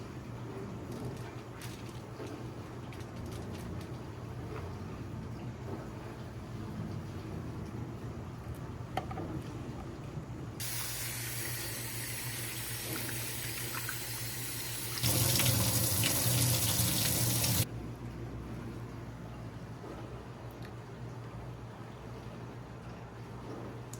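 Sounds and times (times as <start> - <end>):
faucet running into a sink: 10.6 - 17.6.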